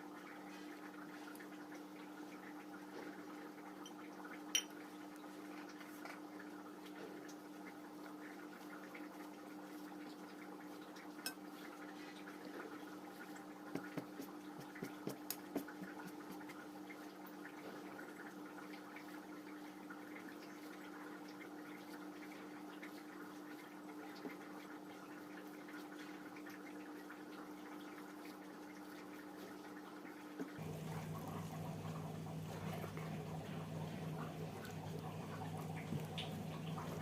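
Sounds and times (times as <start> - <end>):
steady low hum: 30.6 - 37.0.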